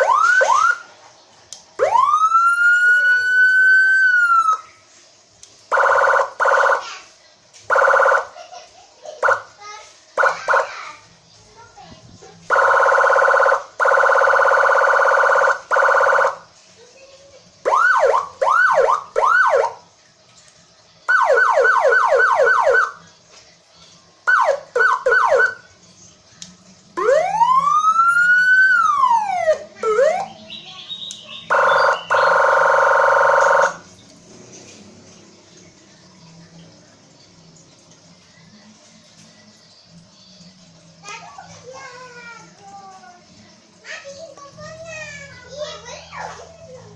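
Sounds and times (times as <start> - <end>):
police siren changing tones: 0.0 - 0.9, 1.8 - 4.6, 5.7 - 6.8, 7.7 - 8.4, 10.2 - 10.7, 12.5 - 16.4, 17.6 - 19.8, 21.1 - 23.0, 24.2 - 25.7, 27.0 - 30.4, 31.5 - 33.9.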